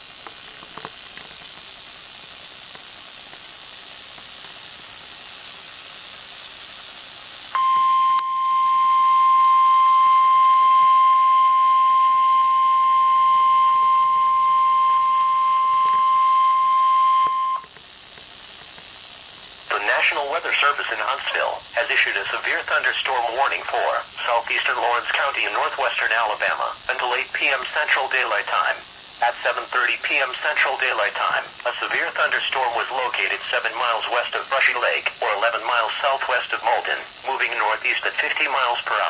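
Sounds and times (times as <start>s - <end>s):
radio hiss: 0.0s - 39.0s
steady high warning tone: 5.8s - 39.0s.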